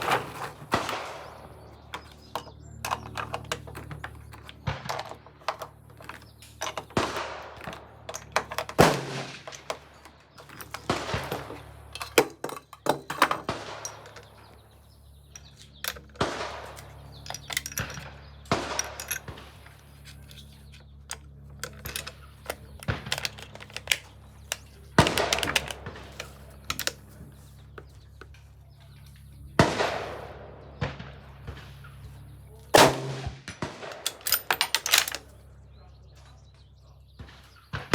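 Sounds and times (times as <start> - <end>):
rifle shots: 0.0 - 3.0, 6.6 - 10.1, 10.7 - 11.9, 13.4 - 14.6, 16.1 - 19.7, 21.8 - 26.9, 29.6 - 31.8, 32.7 - 35.3.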